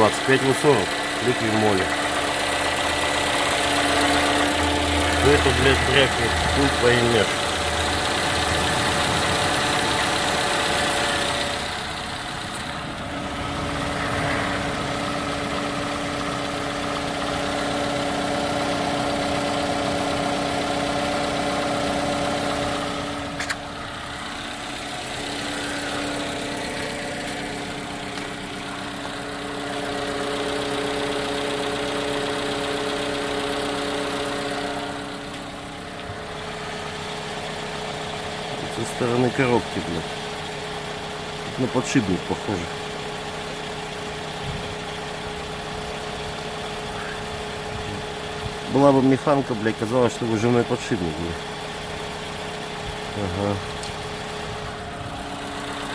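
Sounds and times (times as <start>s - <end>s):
car engine idling: 0.0s - 55.9s.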